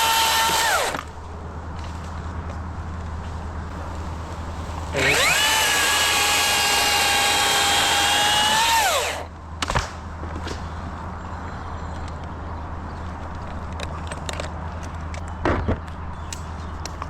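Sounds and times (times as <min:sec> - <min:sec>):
chainsaw cutting: 0:00.0 - 0:01.1, 0:04.8 - 0:09.3.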